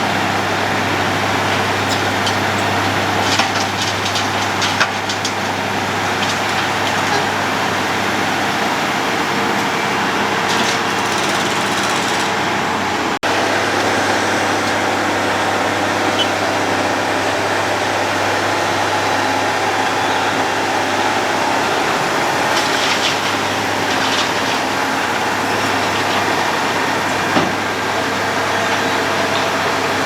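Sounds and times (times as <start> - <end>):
diesel engine drone: 0.0 - 30.0
milling drum grinding: 1.0 - 9.0, 20.4 - 30.0.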